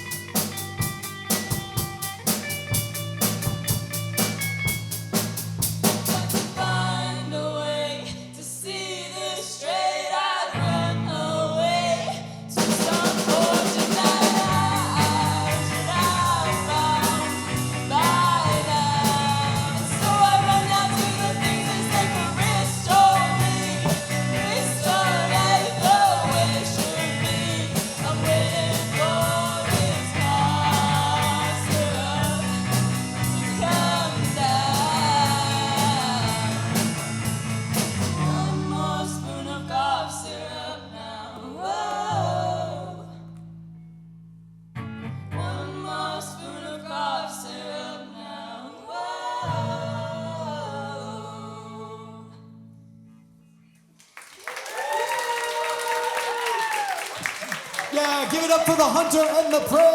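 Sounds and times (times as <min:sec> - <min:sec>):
rock band playing: 0:00.0 - 0:06.6, 0:12.6 - 0:38.2
bass guitar: 0:00.0 - 0:08.6, 0:10.6 - 0:47.2
person singing lead vocal: 0:06.1 - 0:37.0, 0:38.0 - 0:43.3, 0:45.4 - 0:52.5, 0:57.7 - 0:59.9.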